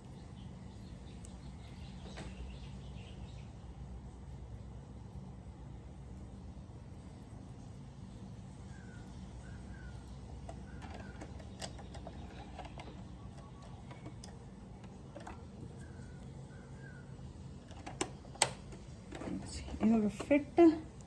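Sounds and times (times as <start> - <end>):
steady low hum: 0.0 - 21.0
sewing machine parts clicking: 10.3 - 16.1, 17.7 - 20.8.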